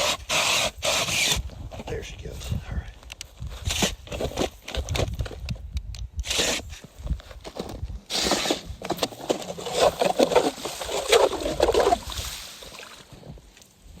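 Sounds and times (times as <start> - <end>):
ice auger churning ice and water: 8.1 - 13.4.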